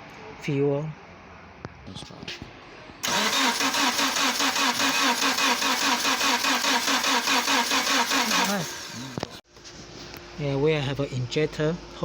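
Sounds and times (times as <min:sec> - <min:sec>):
starter cranking engine: 0:03.0 - 0:09.4.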